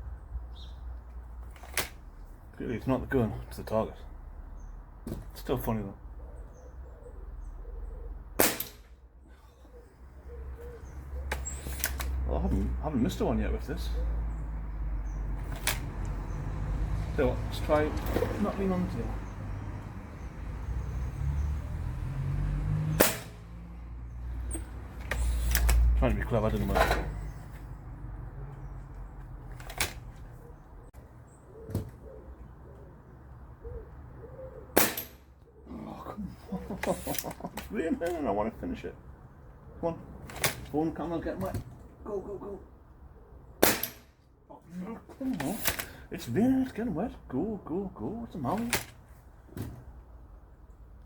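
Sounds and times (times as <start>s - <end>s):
air rifle shot: 8.4s - 8.9s, 23.0s - 23.4s, 34.8s - 35.2s, 43.6s - 44.1s.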